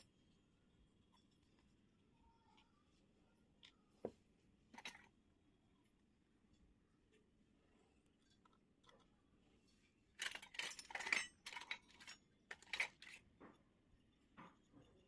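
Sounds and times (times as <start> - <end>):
plastic toys crinkling and clinking: 4.7 - 5.2, 10.1 - 13.6.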